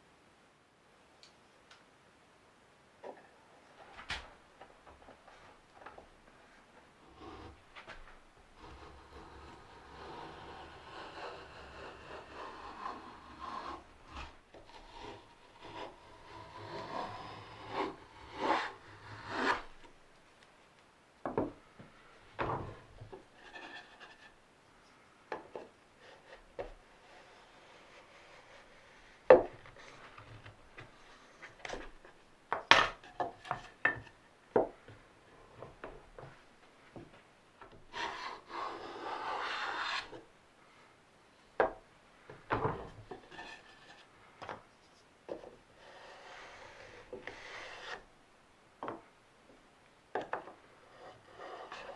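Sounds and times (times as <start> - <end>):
rasping on wood: 7.0 - 7.6, 8.5 - 19.8, 37.9 - 40.2, 45.8 - 48.0, 50.9 - 51.9
wood knocking and tapping: 21.2 - 23.3, 41.6 - 43.2, 48.8 - 49.1, 50.1 - 50.6.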